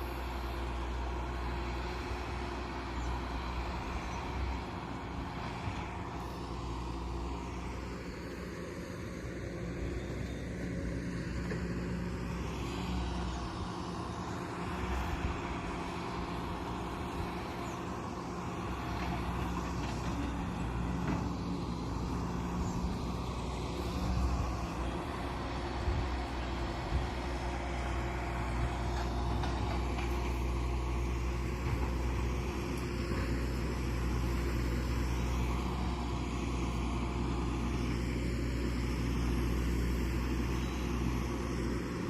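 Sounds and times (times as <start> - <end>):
excavator diesel engine running: 0.0 - 42.0.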